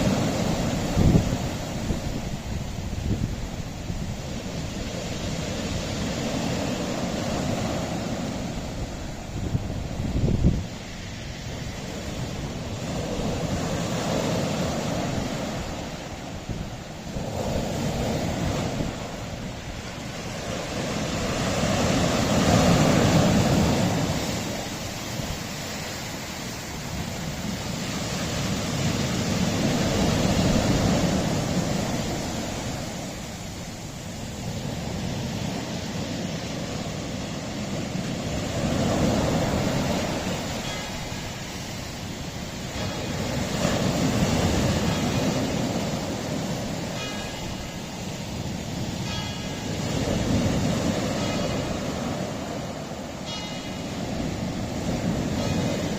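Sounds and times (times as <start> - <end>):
waves washing onto rocky shore: 0.0 - 55.9.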